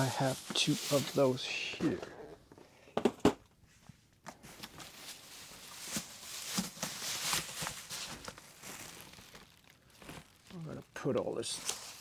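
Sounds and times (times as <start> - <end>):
cardboard boxes scraping and rustling: 0.0 - 1.4.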